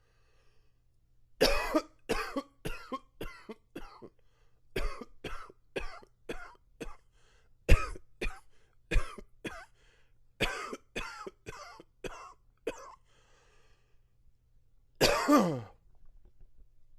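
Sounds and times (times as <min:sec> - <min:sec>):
man coughing: 0:01.4 - 0:04.1, 0:04.8 - 0:07.0, 0:07.7 - 0:09.7, 0:10.4 - 0:13.0, 0:15.0 - 0:15.8.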